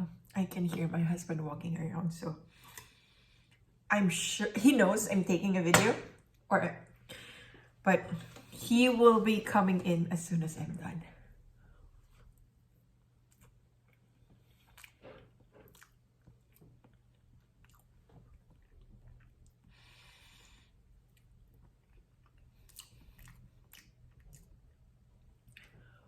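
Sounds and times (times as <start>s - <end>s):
chewing soft cake: 11.6s - 26.0s.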